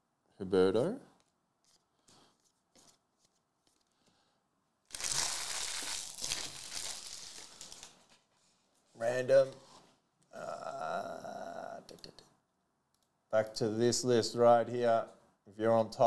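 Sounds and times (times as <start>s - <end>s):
wrapper crinkling and tearing: 4.9s - 8.3s.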